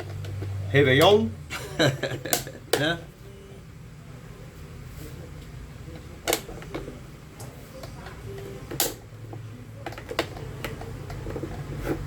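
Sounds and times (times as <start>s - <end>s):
fan parts clicking and knocking: 0.0s - 3.0s, 5.9s - 12.0s.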